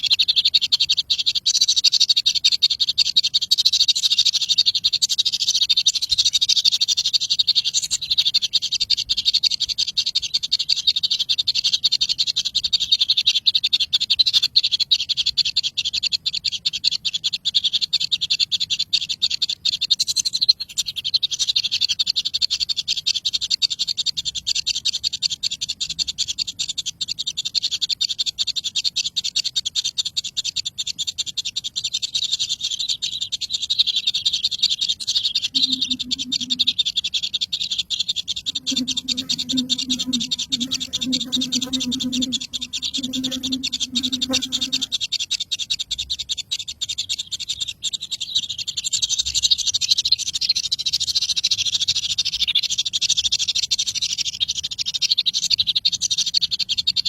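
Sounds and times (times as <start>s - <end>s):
low croak-like animal call: 0.0s - 45.9s
high-pitched buzzing: 35.5s - 36.7s, 38.5s - 45.0s.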